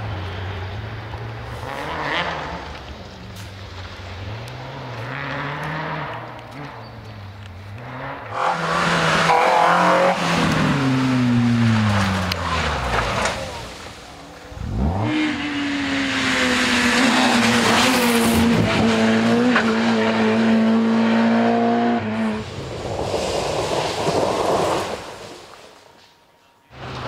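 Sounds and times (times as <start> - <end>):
rally car engine revving: 1.5 - 2.9, 3.8 - 6.9, 7.6 - 25.1
tyres on gravel hissing: 22.4 - 26.2.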